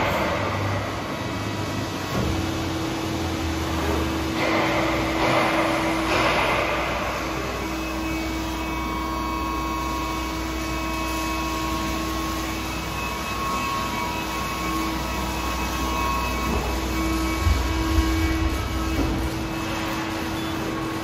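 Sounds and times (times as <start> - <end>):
press brake machine hum: 0.0 - 21.0
deep low surge: 17.3 - 20.2.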